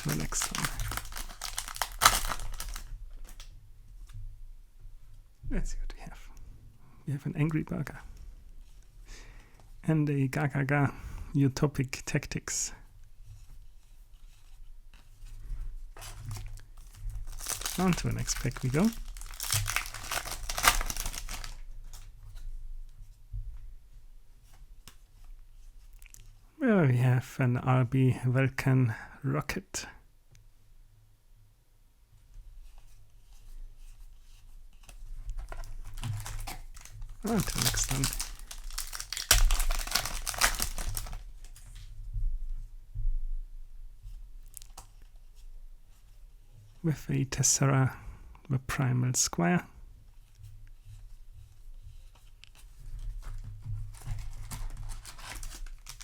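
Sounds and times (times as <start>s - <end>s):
trading cards rustling: 0.0s - 3.4s, 16.0s - 22.0s, 35.4s - 41.6s, 53.2s - 56.0s
foil wrapper crinkling and tearing: 0.0s - 3.5s, 16.0s - 22.1s, 35.3s - 41.8s, 53.0s - 56.0s.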